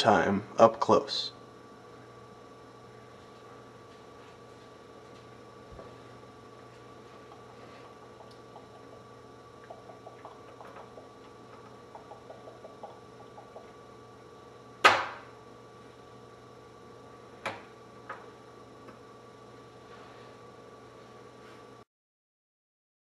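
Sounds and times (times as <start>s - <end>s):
loud spring snap: 14.8s - 15.3s.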